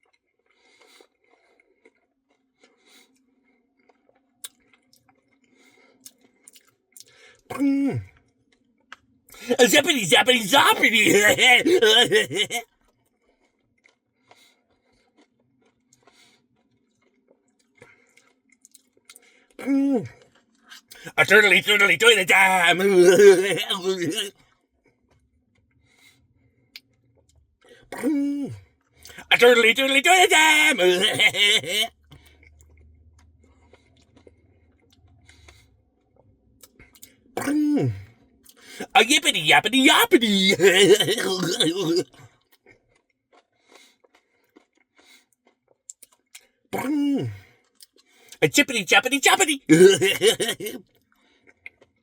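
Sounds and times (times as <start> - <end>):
eating clicks and scrapes: 0.0 - 7.6, 12.9 - 19.4, 42.0 - 46.5
person singing: 9.4 - 12.6, 21.0 - 24.3, 29.1 - 31.9, 48.4 - 50.8.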